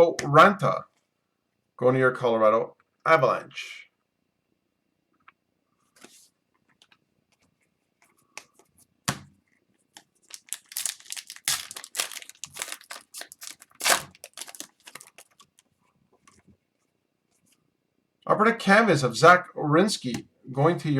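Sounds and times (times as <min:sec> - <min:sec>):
foil pack tearing and crinkling: 0:10.3 - 0:15.5.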